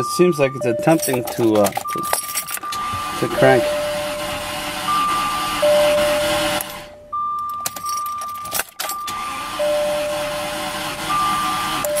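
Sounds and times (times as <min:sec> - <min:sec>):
electronic tone switching pitch: 0:00.0 - 0:07.7
clicks: 0:00.8 - 0:02.9.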